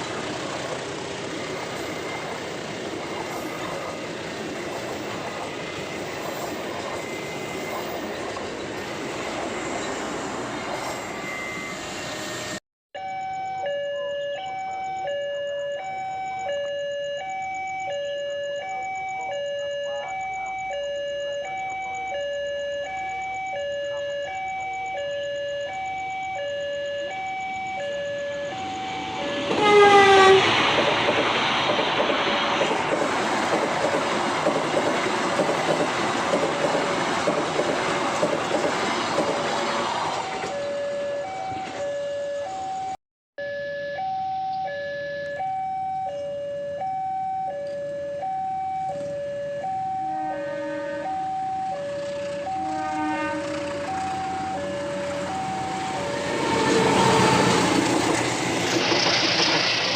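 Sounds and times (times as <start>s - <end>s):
train passing on rails: 0.0s - 12.6s, 27.1s - 43.0s, 47.6s - 59.9s
train horn blast: 29.2s - 30.6s, 50.0s - 51.4s, 52.1s - 55.2s, 55.8s - 57.8s.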